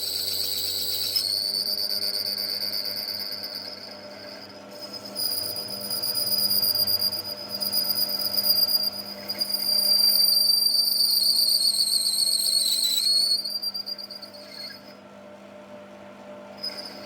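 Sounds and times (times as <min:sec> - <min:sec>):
low machine hum: 0:00.0 - 0:11.2
machine tool cutting metal whine: 0:00.0 - 0:15.0, 0:16.6 - 0:17.0.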